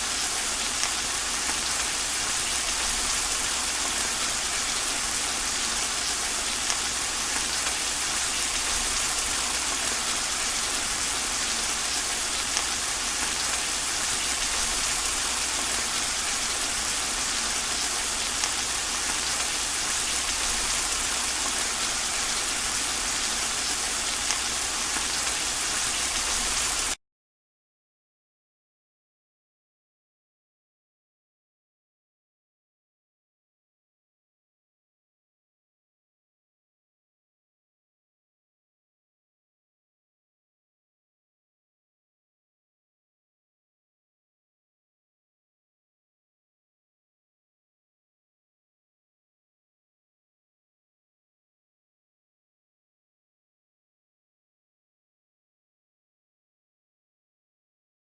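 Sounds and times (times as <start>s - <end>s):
steady rain falling: 0.0s - 27.0s.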